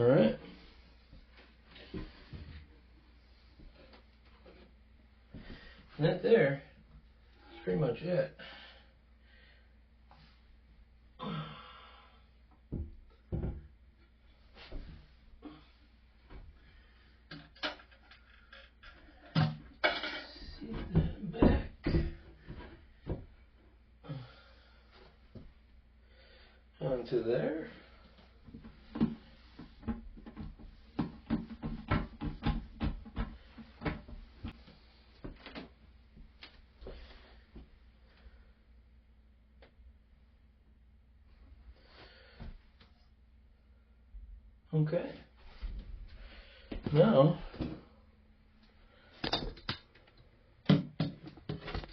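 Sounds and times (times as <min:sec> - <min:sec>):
person sighing: 0:11.2 - 0:12.2, 0:15.4 - 0:15.8, 0:24.0 - 0:24.6
dull knocks of toilet tank parts: 0:12.7 - 0:13.8, 0:17.3 - 0:23.4, 0:28.5 - 0:34.7, 0:50.6 - 0:51.9.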